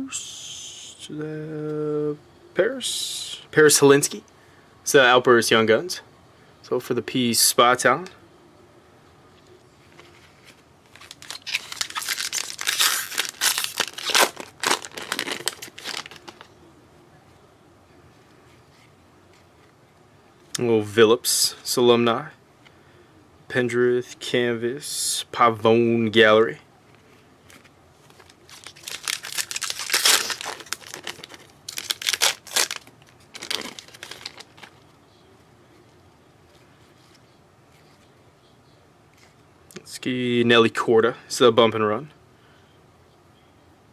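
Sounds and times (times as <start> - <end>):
wrapper crinkling: 10.1 - 16.5, 27.5 - 34.8
foil pack tearing open: 10.9 - 16.5, 28.2 - 34.7.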